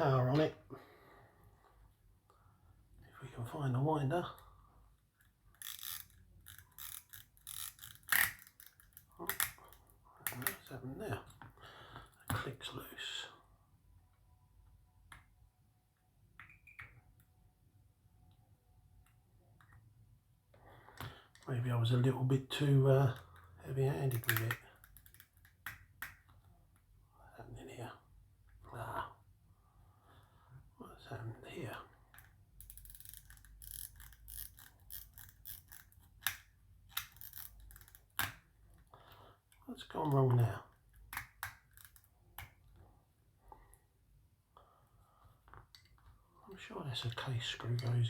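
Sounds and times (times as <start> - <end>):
pocket watch ratchet clicking: 5.5 - 10.6, 24.2 - 26.1, 32.2 - 38.3.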